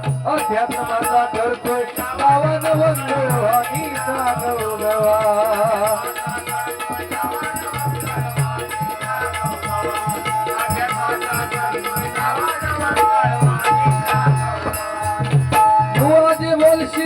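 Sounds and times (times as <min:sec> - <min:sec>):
drum beats: 0:00.0 - 0:17.0
jingling rattle: 0:00.4 - 0:17.0.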